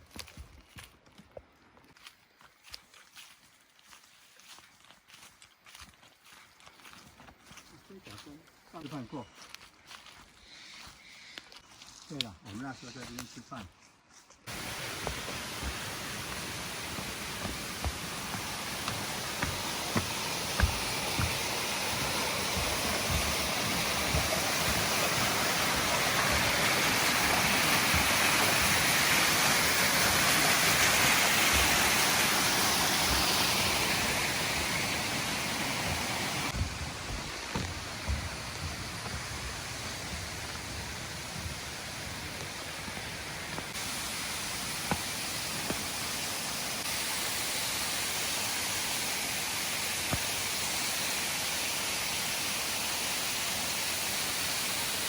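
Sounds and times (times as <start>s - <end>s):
footsteps on a trail: 0.0s - 46.2s
rushing water: 14.5s - 55.0s.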